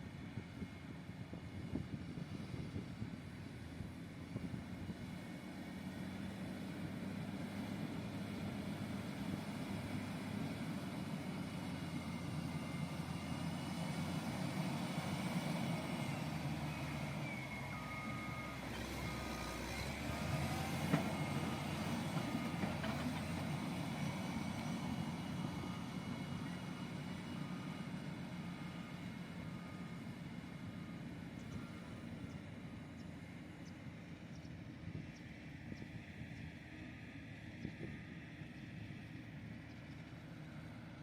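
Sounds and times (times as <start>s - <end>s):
heavy machine engine running: 0.0s - 41.0s
reversing alarm beeping: 16.5s - 19.6s.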